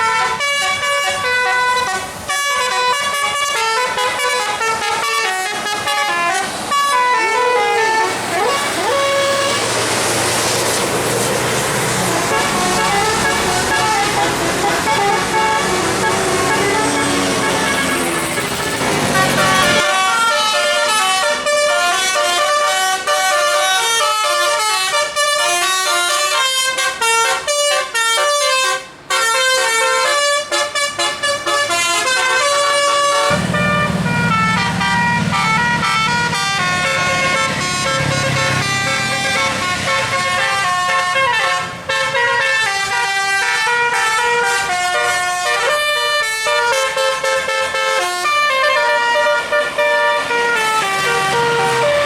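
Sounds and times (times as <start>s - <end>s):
musical air horn tune: 0.0s - 52.0s
low engine rumble: 33.2s - 39.7s.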